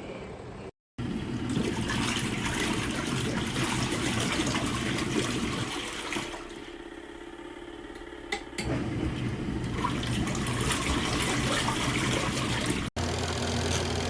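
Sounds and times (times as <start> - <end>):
water gushing and splashing: 1.0 - 6.6, 8.7 - 12.9.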